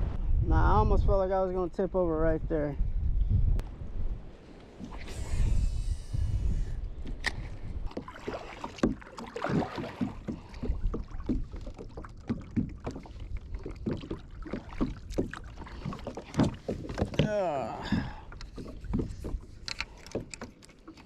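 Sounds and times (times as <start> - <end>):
wind on microphone: 0.0 - 20.4
paddle splashes: 7.1 - 21.0.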